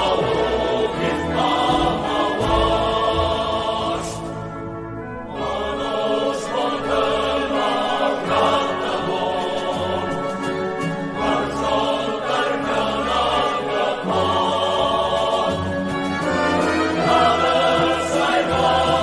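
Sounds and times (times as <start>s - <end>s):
choir singing: 0.0s - 19.0s
low orchestral bass notes: 0.0s - 19.0s.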